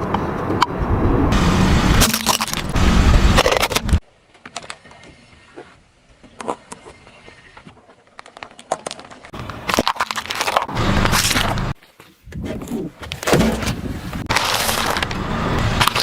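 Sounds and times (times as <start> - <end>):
car rolling rumble: 0.0 - 4.0, 10.3 - 16.0
objects crackling under tyre: 1.8 - 16.0.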